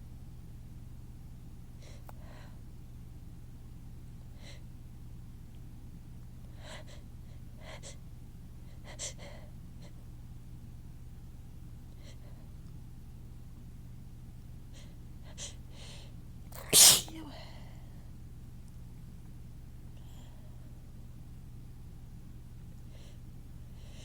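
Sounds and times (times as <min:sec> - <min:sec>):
person gasping before a sneeze: 0:16.6 - 0:17.3.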